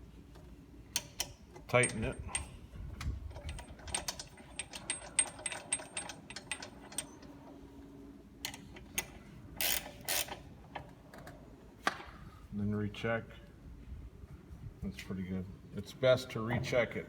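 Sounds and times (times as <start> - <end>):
ratchet wrench clicking: 8.5 - 10.4.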